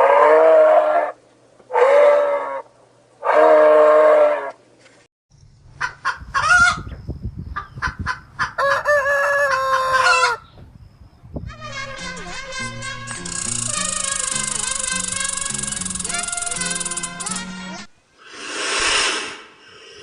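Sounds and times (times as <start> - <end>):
chickens clucking: 5.8 - 10.4
rooster crowing: 8.4 - 10.5
drawn-out animal call: 13.2 - 17.4.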